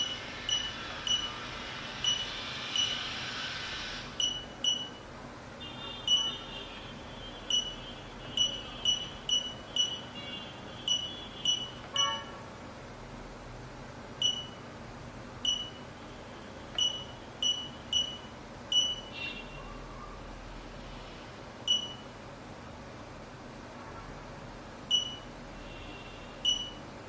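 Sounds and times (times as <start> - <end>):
high key-press beeps: 0.0 - 3.1, 4.1 - 5.0, 6.1 - 6.4, 7.5 - 10.2, 10.9 - 12.3, 14.2 - 14.7, 15.4 - 15.9, 16.7 - 19.3, 21.7 - 22.2, 24.9 - 25.3, 26.4 - 26.8.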